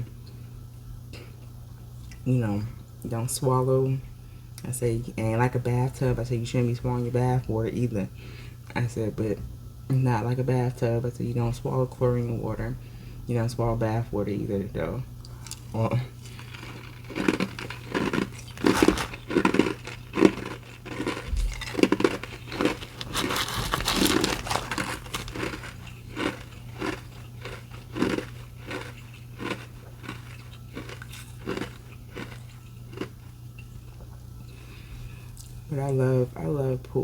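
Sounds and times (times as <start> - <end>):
crunching and chewing ice: 15.4 - 34.1.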